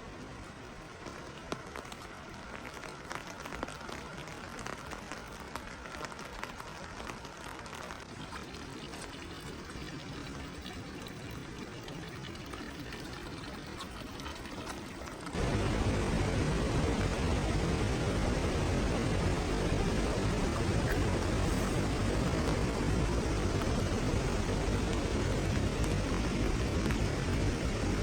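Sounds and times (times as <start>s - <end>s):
running water rushing: 0.0s - 28.0s
small splashes and drips: 0.8s - 15.4s.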